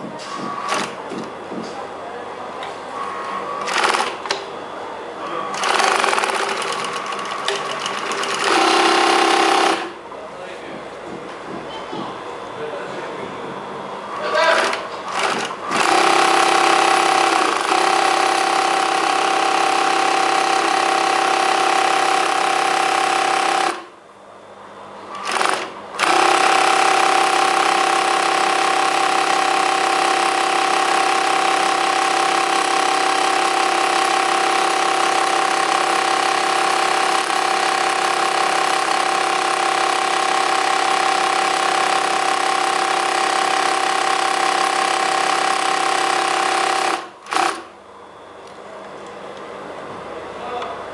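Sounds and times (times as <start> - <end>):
sewing machine whining: 3.6 - 4.4, 5.4 - 10.0, 14.2 - 23.9, 25.1 - 47.7.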